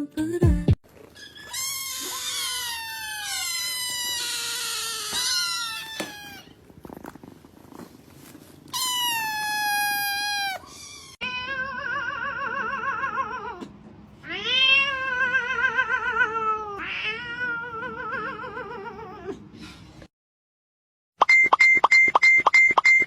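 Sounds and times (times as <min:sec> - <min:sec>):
cat meowing: 0:01.2 - 0:06.6, 0:08.7 - 0:13.6.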